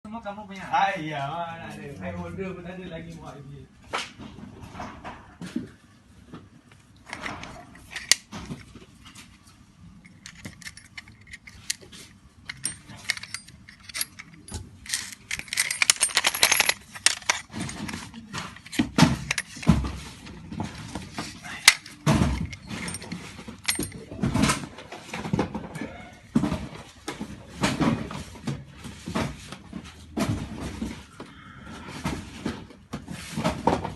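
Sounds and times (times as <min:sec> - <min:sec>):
metal drill bits clinking in case: 0:07.1 - 0:08.3, 0:10.0 - 0:19.8, 0:21.0 - 0:24.1.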